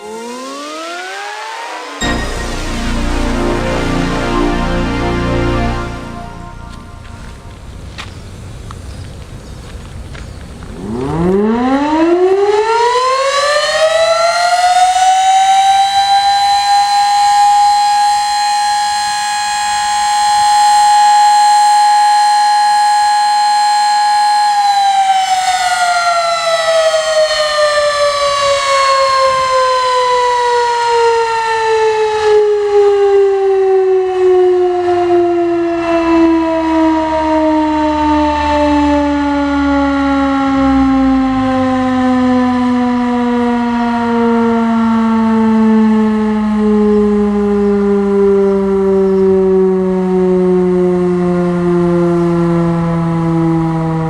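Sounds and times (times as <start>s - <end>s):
tornado siren wailing: 0.0s - 8.4s, 10.6s - 54.0s.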